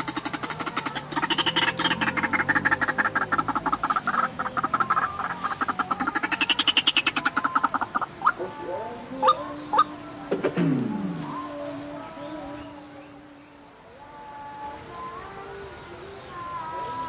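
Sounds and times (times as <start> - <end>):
bird harsh repeated calls: 0.0 - 11.4.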